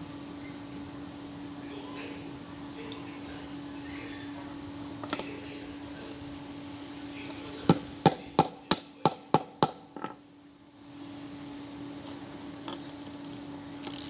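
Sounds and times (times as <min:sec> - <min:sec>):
steady hum: 0:00.0 - 0:14.0
hammer strikes: 0:07.7 - 0:09.9.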